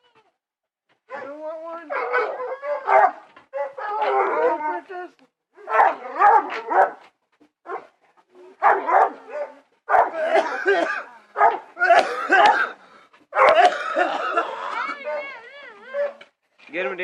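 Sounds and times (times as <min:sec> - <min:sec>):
dog barking: 0:01.1 - 0:04.7, 0:05.6 - 0:08.0, 0:08.6 - 0:13.7.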